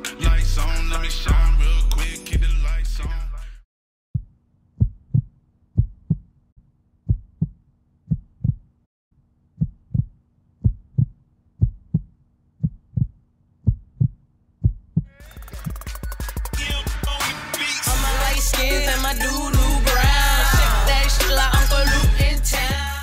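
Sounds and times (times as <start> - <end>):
heartbeat double thumps: 4.1 - 6.3, 7.1 - 8.7, 9.6 - 16.2.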